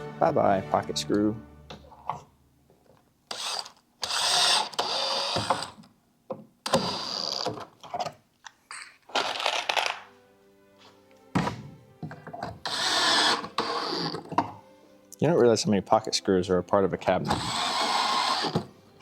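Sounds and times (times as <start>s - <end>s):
drill driving screws into wood: 3.3s - 5.9s, 6.6s - 7.7s, 12.6s - 14.4s, 17.3s - 18.7s.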